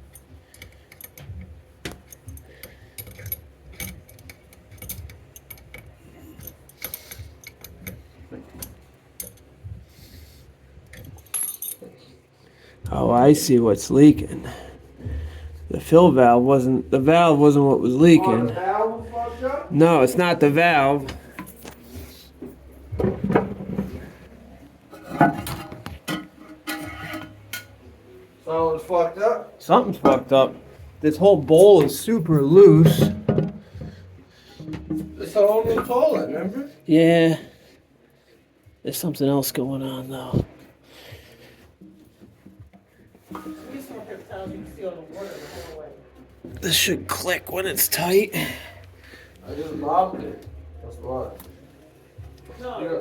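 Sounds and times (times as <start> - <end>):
porcelain toilet knocks and clinks: 32.8 - 34.0.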